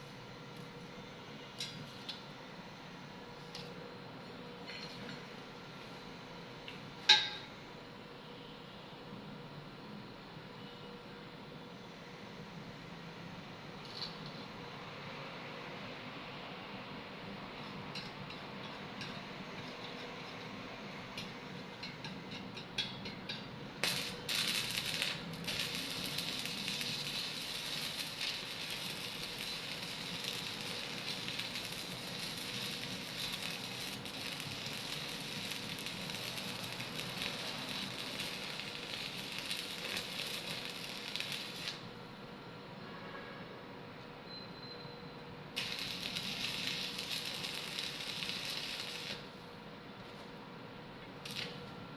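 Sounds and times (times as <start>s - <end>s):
welding arc crackling and sizzling: 17.6s - 42.0s, 45.6s - 49.4s, 51.1s - 51.8s.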